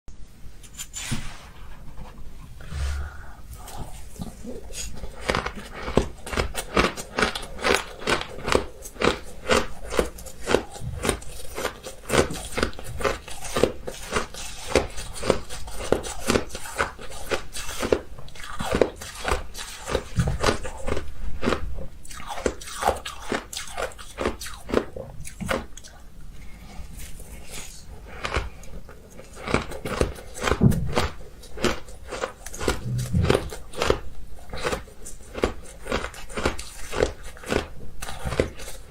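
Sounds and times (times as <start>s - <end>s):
ice crunching in mouth: 27.4s - 38.9s.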